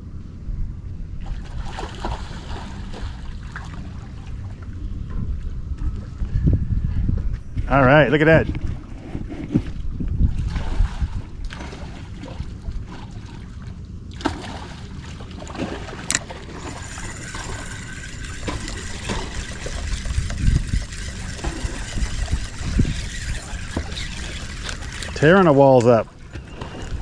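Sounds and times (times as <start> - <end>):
low wind rumble: 0.0 - 27.0
water sounds around boat: 0.8 - 6.4, 7.1 - 27.0
faint steady high whine: 16.1 - 27.0.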